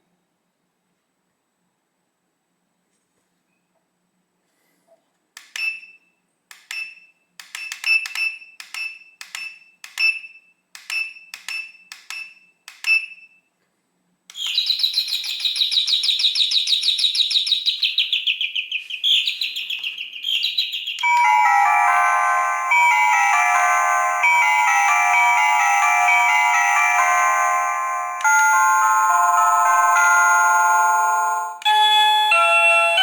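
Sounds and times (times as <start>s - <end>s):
doorbell chime pings: 21.0s - 33.0s.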